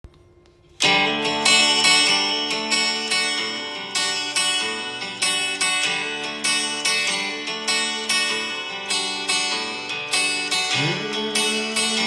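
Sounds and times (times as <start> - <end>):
acoustic guitar picking chords: 0.4 - 12.0.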